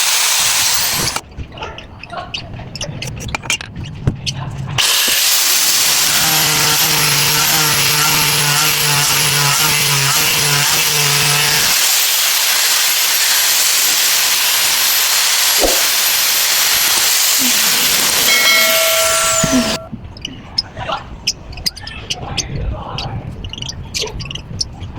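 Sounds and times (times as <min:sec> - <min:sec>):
high-speed power tool whining: 0:00.0 - 0:01.2, 0:04.8 - 0:19.9.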